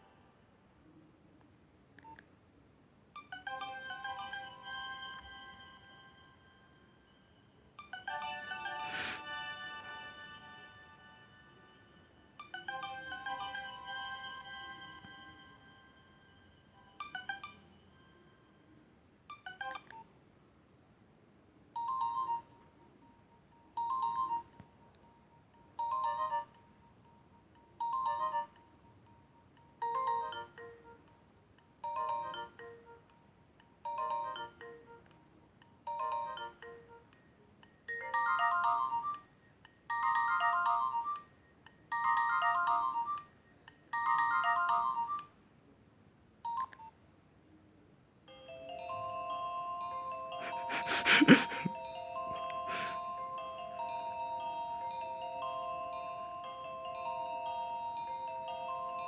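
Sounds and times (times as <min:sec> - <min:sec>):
mobile phone ringtone beeps: 0:48.3 - 0:59.0.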